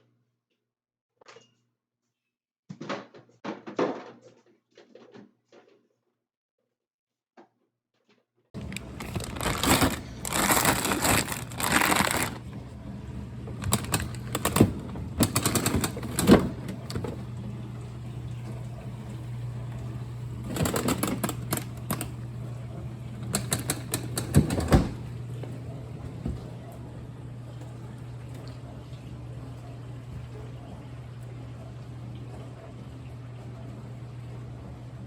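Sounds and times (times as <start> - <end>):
containers clattering and knocking: 8.6 - 12.6, 13.5 - 17.3
rustling handling noise: 8.6 - 12.6, 13.5 - 17.2.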